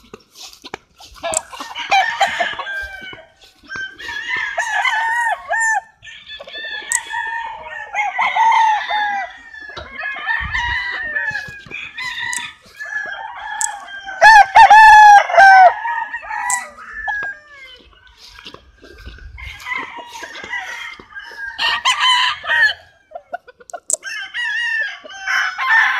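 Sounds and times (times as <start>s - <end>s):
roosters crowing: 1.0s - 25.9s.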